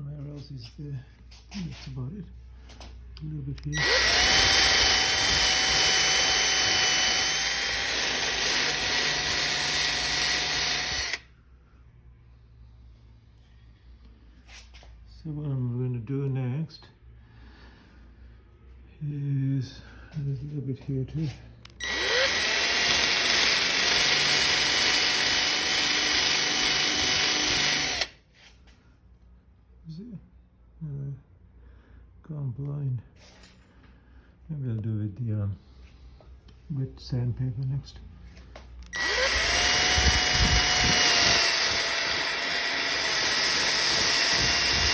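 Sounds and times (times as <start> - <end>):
power sander running: 3.8 - 11.2, 21.8 - 28.1, 38.9 - 44.9.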